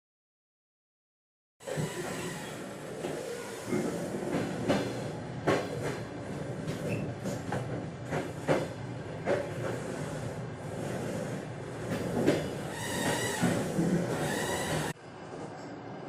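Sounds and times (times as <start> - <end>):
train rolling rumble: 1.6 - 16.0
train wheels knocking on rail joints: 3.0 - 10.0, 11.8 - 14.9.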